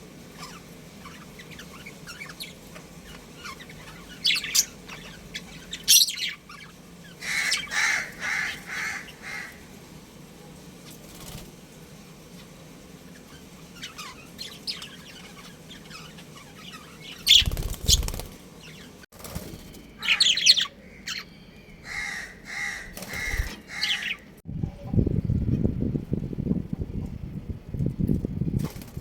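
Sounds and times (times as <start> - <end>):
budgerigars chirping: 0.4 - 9.6, 13.1 - 19.0, 20.0 - 24.3
wings flapping: 10.8 - 11.9, 17.2 - 20.3, 22.8 - 23.8, 28.6 - 29.0.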